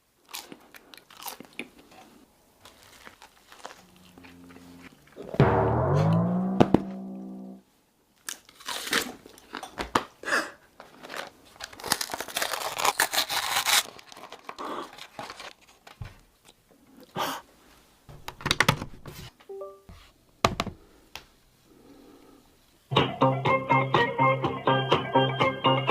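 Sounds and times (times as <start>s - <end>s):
food wrapper crinkling and tearing: 0.0s - 4.4s, 8.2s - 9.8s, 10.8s - 16.6s
rising pitched sound effect: 3.8s - 7.6s.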